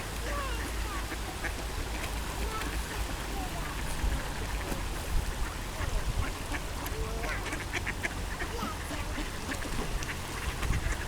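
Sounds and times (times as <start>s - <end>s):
ducks quacking: 0.2s - 11.0s.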